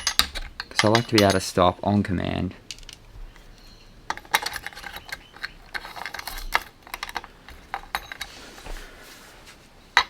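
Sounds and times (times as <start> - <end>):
metal parts clinking: 0.0 - 1.7, 2.6 - 8.8.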